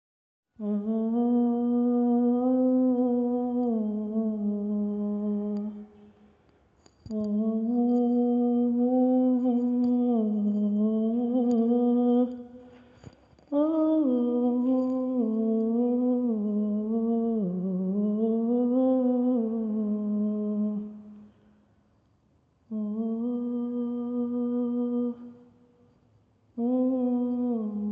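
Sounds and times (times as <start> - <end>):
man humming a sad melody: 0.6 - 6.1, 7.1 - 12.8, 13.5 - 21.3, 22.7 - 25.5, 26.6 - 27.9.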